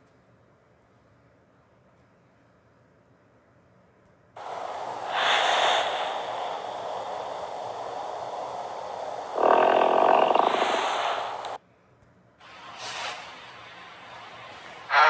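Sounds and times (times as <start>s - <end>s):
voice-changed fart sound: 9.4s - 11.2s.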